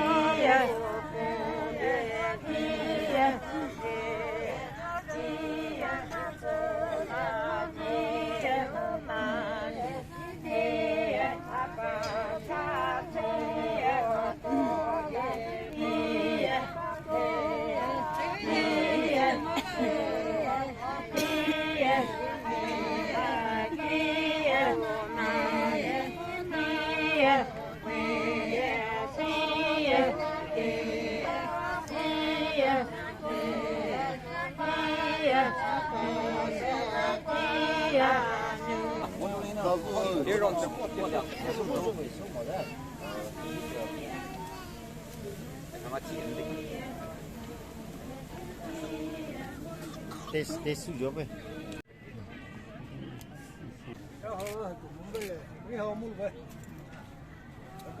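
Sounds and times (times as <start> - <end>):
group of voices singing: 0.0 - 51.9.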